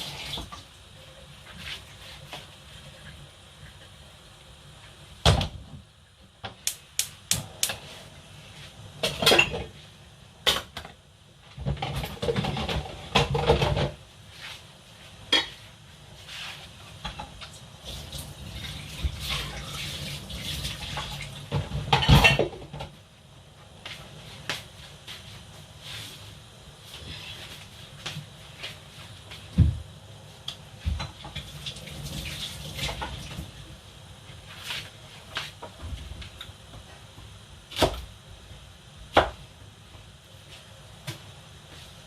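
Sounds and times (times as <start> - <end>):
pots scraping and rattling: 9.0 - 9.8, 11.5 - 14.0, 15.2 - 22.9
dishes and cutlery clinking: 15.3 - 15.6.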